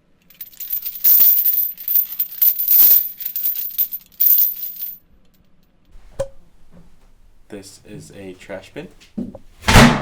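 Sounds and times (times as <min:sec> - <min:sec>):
metal chains rattling: 0:00.3 - 0:05.0.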